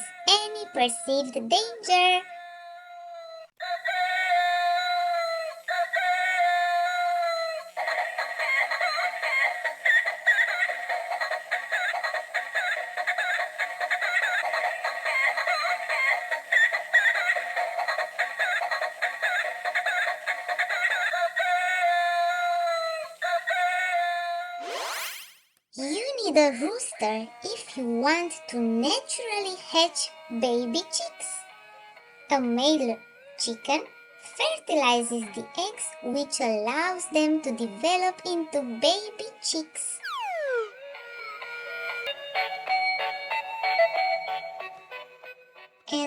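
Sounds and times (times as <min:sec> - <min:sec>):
electronic toy rooster crowing: 0:03.6 - 0:25.2, 0:40.0 - 0:42.1
fast electronic jingle: 0:40.0 - 0:41.6.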